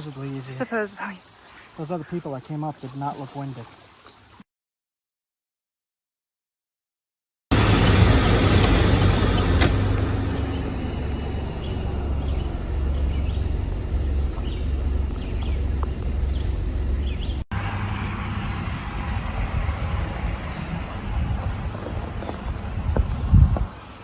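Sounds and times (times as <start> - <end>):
vehicle engine rumble: 7.5 - 24.0.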